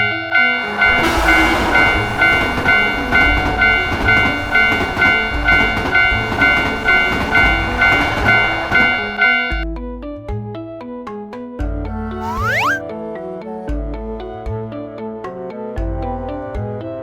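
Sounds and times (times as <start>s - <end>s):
passing train rumbling: 0.0s - 9.6s
railroad crossing bell ringing: 0.0s - 9.6s.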